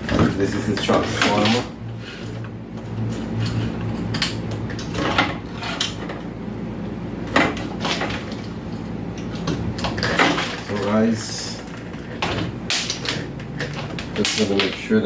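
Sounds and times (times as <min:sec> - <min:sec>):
steady low hum: 0:00.0 - 0:15.0
clicks of small parts and wires: 0:11.6 - 0:14.9.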